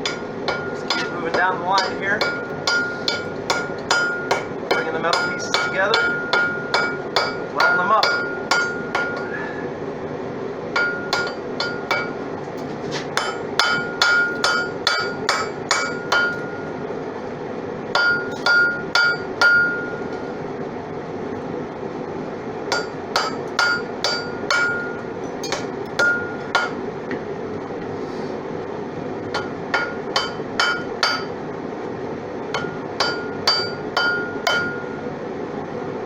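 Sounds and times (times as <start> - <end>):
hammer striking steel on anvil: 0.0 - 9.4, 10.8 - 12.2, 13.2 - 16.7, 17.9 - 20.2, 22.7 - 26.8, 29.3 - 31.4, 32.5 - 35.0
rushing forge: 0.0 - 9.7, 10.7 - 16.7, 17.9 - 20.4, 22.7 - 26.8, 29.2 - 31.5, 32.4 - 35.1.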